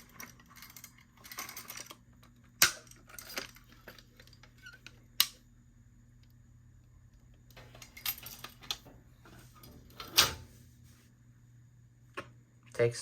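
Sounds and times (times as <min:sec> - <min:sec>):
keys rattling and scraping: 0:00.0 - 0:02.0, 0:02.7 - 0:04.9, 0:07.6 - 0:10.4.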